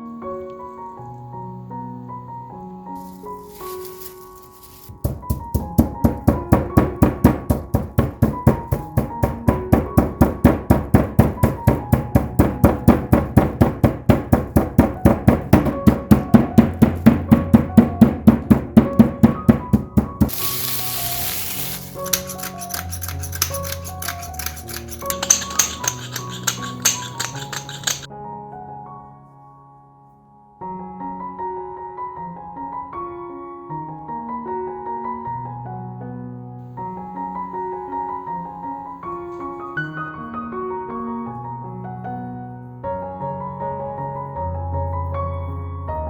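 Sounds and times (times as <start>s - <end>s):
background music with sustained tones: 0.0s - 4.9s.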